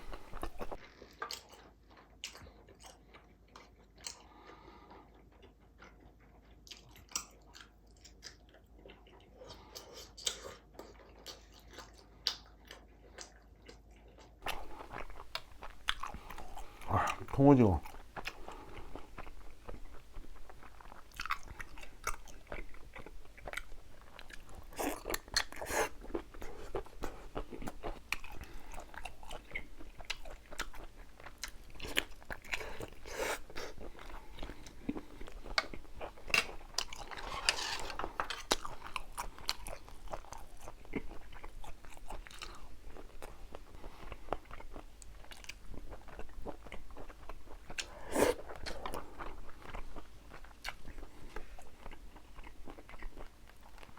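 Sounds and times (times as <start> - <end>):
chewing and biting seafood: 0.0 - 53.9.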